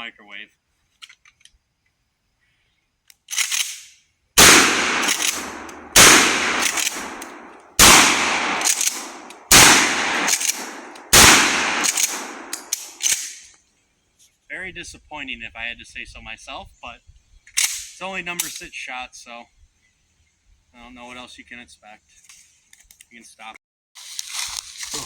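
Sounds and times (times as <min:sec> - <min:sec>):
shotgun blasts echoing: 0:04.4 - 0:13.3.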